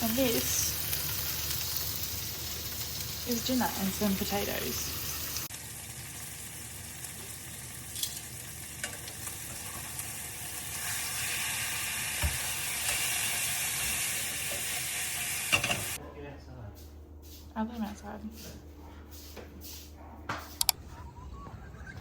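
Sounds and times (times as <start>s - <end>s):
food sizzling in frying pan: 0.0s - 16.0s.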